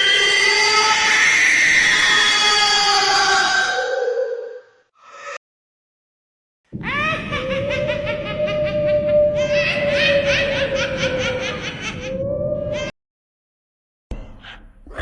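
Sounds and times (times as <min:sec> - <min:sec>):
eerie ghostly laughter: 0:06.8 - 0:13.0.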